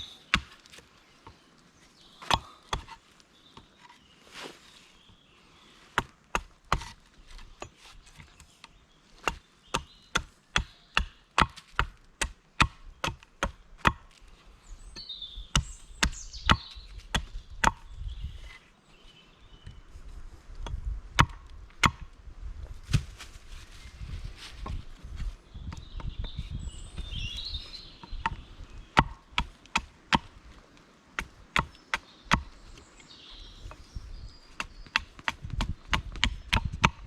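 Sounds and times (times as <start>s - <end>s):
axe chopping wood: 0.3s - 0.8s, 2.2s - 3.0s, 6.0s - 7.7s, 9.2s - 14.2s, 15.5s - 17.8s, 20.7s - 22.1s, 29.0s - 30.3s, 34.5s - 37.0s.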